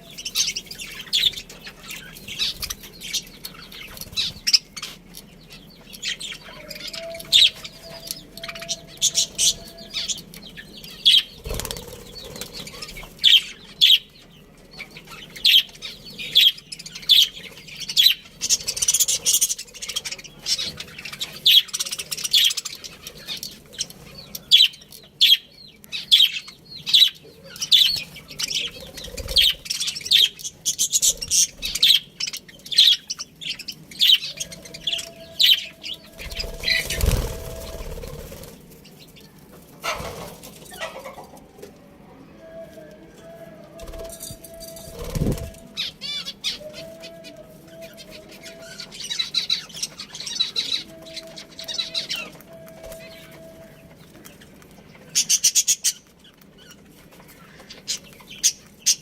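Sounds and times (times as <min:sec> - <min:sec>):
budgerigars chirping: 0:00.0 - 0:38.6.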